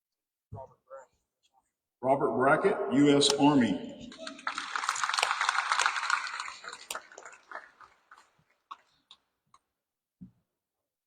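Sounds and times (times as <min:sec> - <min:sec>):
audience applause: 0:04.0 - 0:09.1
scattered single claps: 0:04.2 - 0:09.6.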